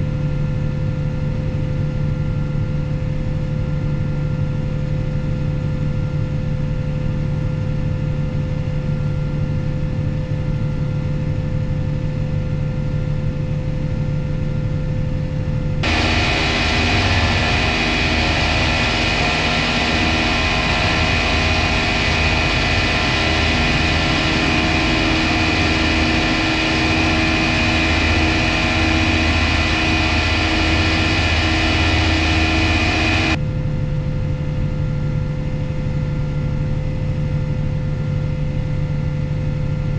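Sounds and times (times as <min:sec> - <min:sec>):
machine with high whine: 0:15.8 - 0:33.5.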